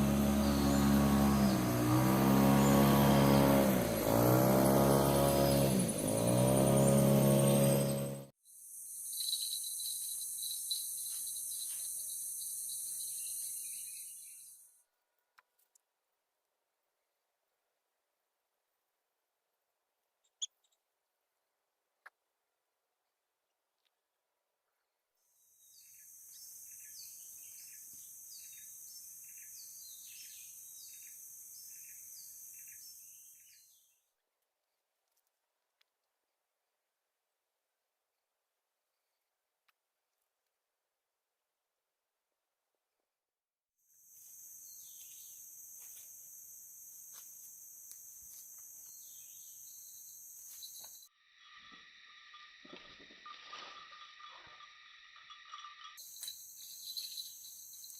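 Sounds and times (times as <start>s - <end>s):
bird chirping: 0.0s - 1.8s, 8.9s - 14.7s, 25.5s - 34.0s, 44.6s - 45.4s, 48.8s - 57.9s
insects droning: 0.0s - 14.6s, 43.9s - 57.9s.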